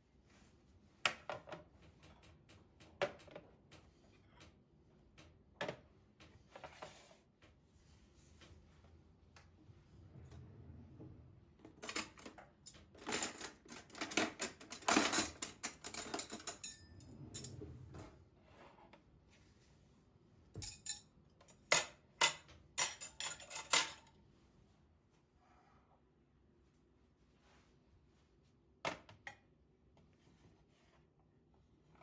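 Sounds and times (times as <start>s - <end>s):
dishes and cutlery clinking: 13.0s - 17.6s, 20.6s - 24.1s.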